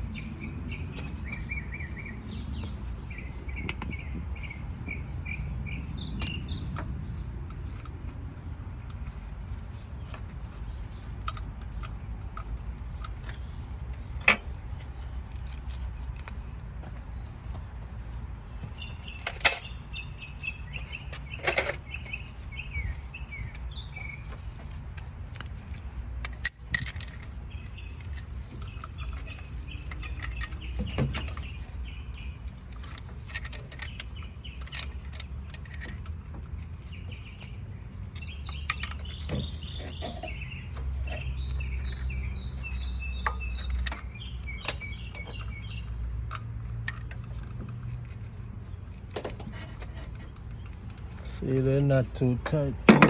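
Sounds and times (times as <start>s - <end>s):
small birds chirping: 0.0s - 52.8s
metal tools clinking on bolts: 18.5s - 19.9s, 20.7s - 22.3s, 25.3s - 37.5s, 38.2s - 48.4s, 49.1s - 53.0s.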